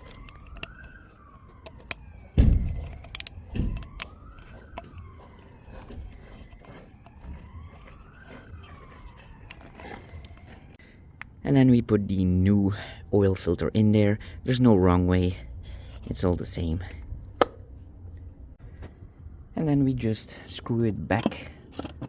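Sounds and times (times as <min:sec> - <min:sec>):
clicks and knock of parts handled: 0:00.0 - 0:11.3, 0:21.2 - 0:22.0
faint siren wailing: 0:00.0 - 0:12.5.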